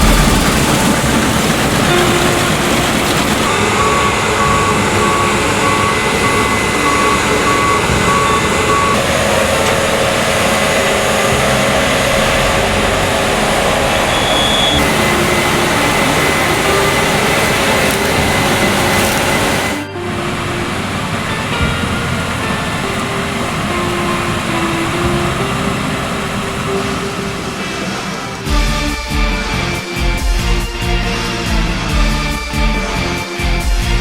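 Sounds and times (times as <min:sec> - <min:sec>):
reversing alarm beeps: 0:00.0 - 0:09.9, 0:13.4 - 0:19.8
combine harvester running: 0:00.0 - 0:29.8.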